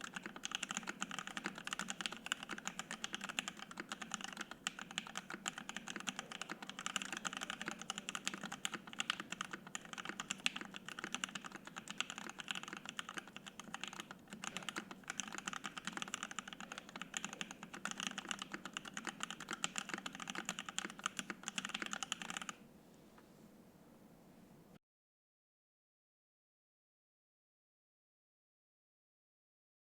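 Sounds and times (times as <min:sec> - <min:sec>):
mechanical keyboard typing: 0:00.0 - 0:22.6.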